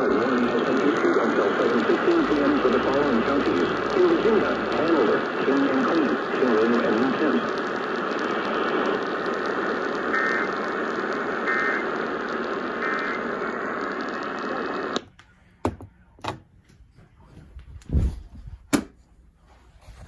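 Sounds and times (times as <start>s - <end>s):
radio static hiss: 0.0s - 15.6s.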